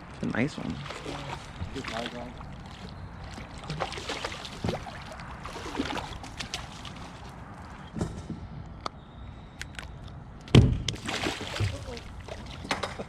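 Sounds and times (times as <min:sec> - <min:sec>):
water lapping against kayak hull: 0:00.1 - 0:08.0, 0:10.9 - 0:13.0.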